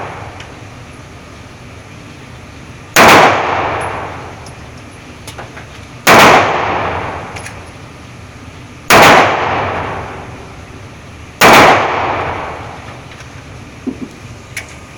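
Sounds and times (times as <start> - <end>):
pistol shots echoing: 3.0 - 4.3, 6.0 - 7.4, 8.9 - 10.2, 11.4 - 12.9.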